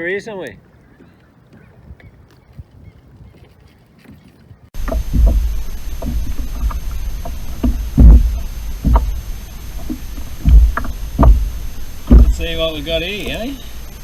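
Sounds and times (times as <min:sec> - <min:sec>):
wind buffeting microphone: 0:00.6 - 0:14.0.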